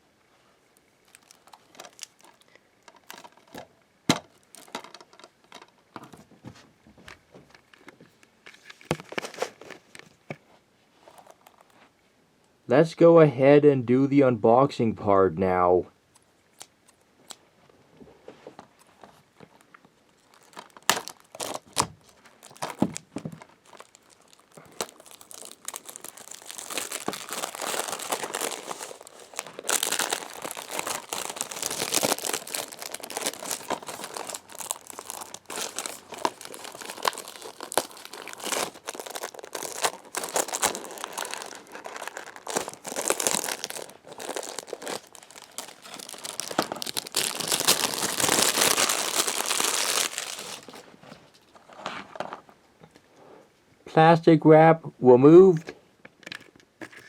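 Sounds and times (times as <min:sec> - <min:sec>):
plastic wrap crinkling: 0:01.0 - 0:05.8, 0:18.7 - 0:50.9.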